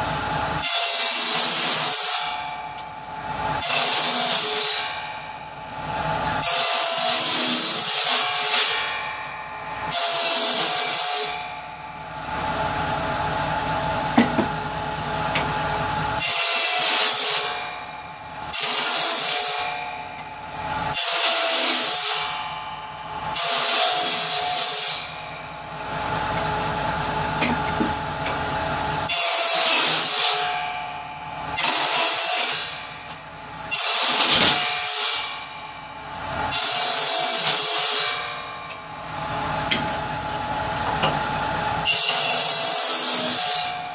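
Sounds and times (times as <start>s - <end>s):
power saw cutting wood: 0.0s - 43.9s.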